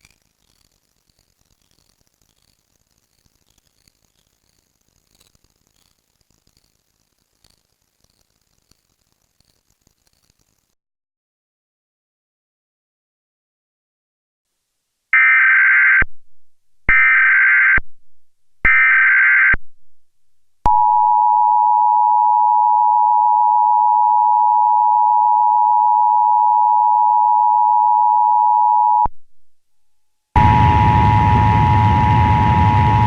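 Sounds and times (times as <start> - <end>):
data burst tones: 16.9 - 17.8, 18.7 - 19.6, 30.4 - 33.0.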